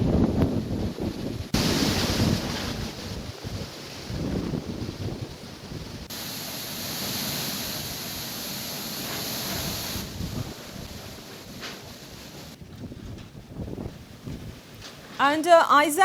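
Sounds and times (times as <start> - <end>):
storm wind buffeting microphone: 0.0 - 6.1, 9.5 - 15.1.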